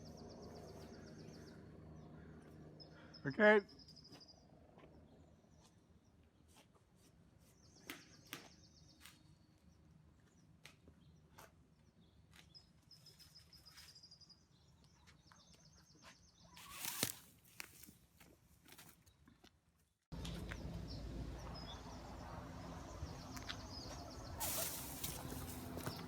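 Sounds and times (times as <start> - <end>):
songbird trills: 0.0 - 5.7
rustling: 16.6 - 18.0, 24.4 - 26.0.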